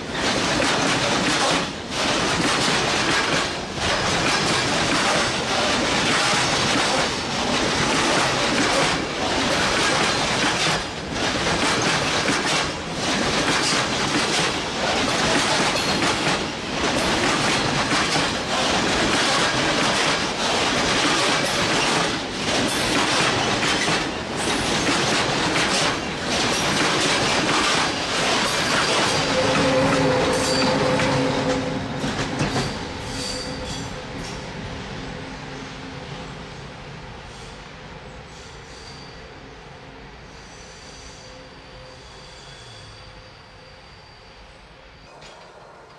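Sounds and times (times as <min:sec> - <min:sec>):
train wheels clattering: 0:00.0 - 0:34.4.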